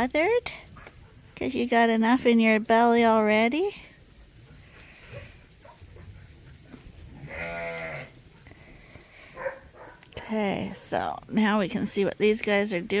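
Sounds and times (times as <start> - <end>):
sheep bleating: 7.2 - 8.1.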